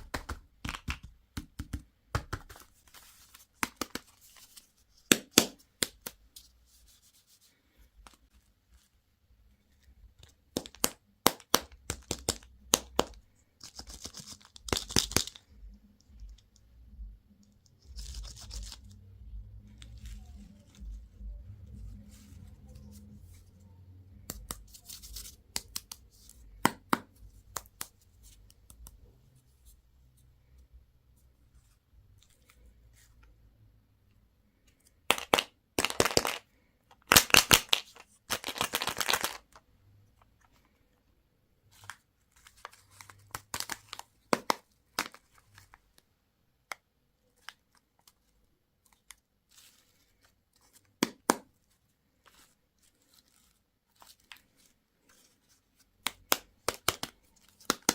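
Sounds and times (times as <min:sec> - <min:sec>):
packaging tearing and crinkling: 0:37.1 - 0:39.4.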